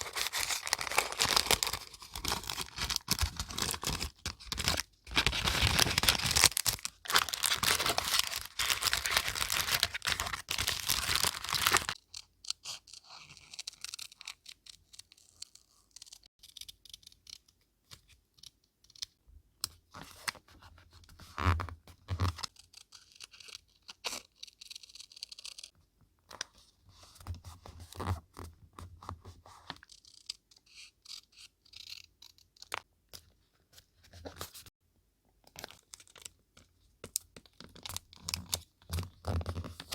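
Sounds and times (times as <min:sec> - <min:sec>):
paper tearing and crumpling: 0:00.0 - 0:12.0.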